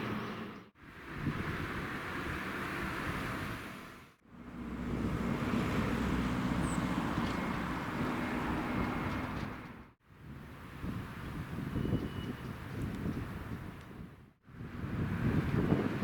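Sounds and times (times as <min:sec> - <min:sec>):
vehicle passing: 0:00.0 - 0:09.9.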